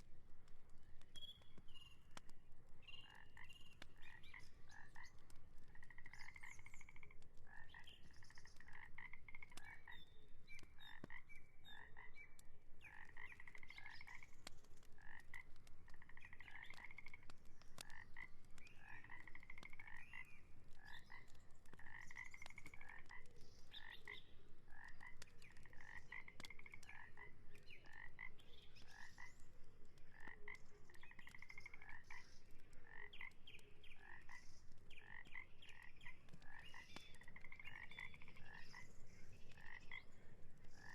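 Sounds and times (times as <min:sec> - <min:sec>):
frogs croaking trills: 0:03.0 - 0:08.0, 0:08.6 - 0:10.0, 0:20.8 - 0:29.4, 0:30.1 - 0:33.4, 0:39.5 - 0:40.1.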